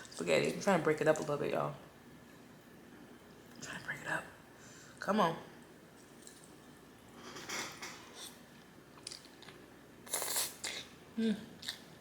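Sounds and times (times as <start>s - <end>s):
slurping and chewing: 7.3s - 11.9s.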